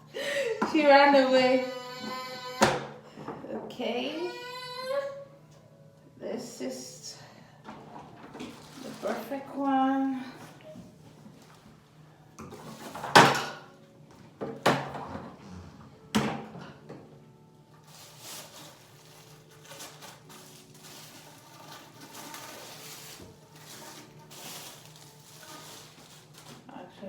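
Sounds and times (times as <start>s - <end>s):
parts clattering and rustling: 7.7s - 9.4s, 12.4s - 13.6s, 17.7s - 26.7s.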